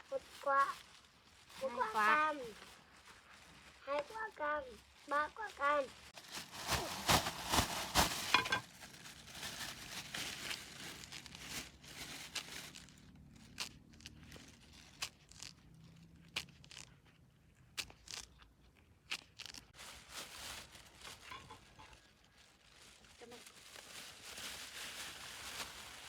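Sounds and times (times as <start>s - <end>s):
orange rind tearing rustle: 0.0s - 26.0s
peel snapping: 17.7s - 18.4s.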